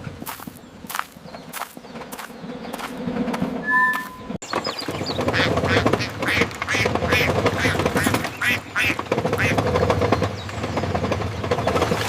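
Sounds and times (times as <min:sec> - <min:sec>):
ducks quacking: 0:05.1 - 0:09.9.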